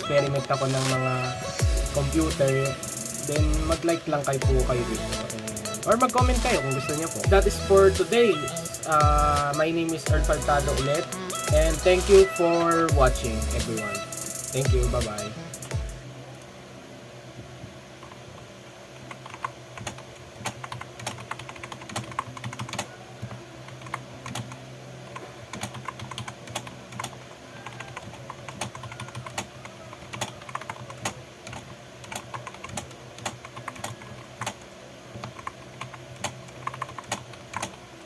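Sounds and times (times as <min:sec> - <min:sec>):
steady low hum: 0:00.0 - 0:19.3.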